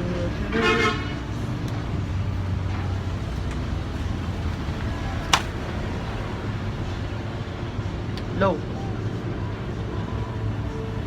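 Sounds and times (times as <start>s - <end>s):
road traffic rumble: 0.0s - 8.4s
sharp click: 5.3s - 5.5s.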